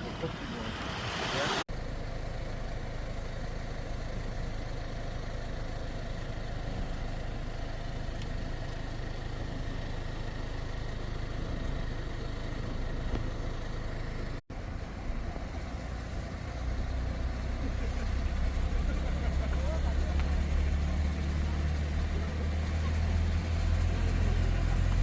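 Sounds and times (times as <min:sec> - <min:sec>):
vehicle engine and road noise: 0:00.0 - 0:25.0.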